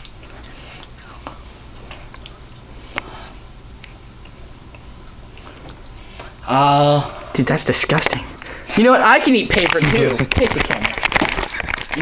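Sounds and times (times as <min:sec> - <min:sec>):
low room hum: 0:00.0 - 0:12.0
paper crinkling while chewed: 0:09.5 - 0:12.0.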